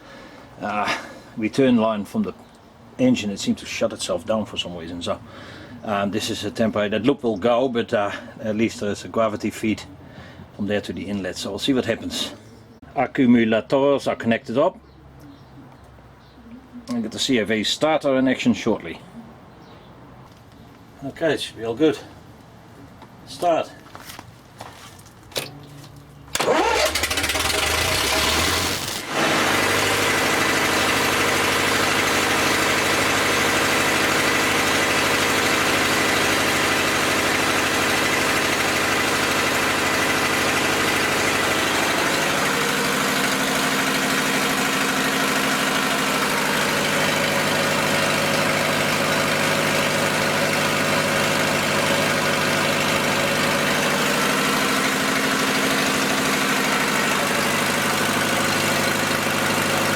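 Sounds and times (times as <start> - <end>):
diesel generator running: 0.0 - 13.6, 21.8 - 59.9
electric starter cranking: 26.3 - 59.9.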